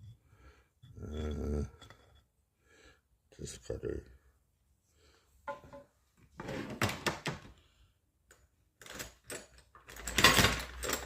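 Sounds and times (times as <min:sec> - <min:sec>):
metal parts and tools clattering: 0:08.3 - 0:11.0.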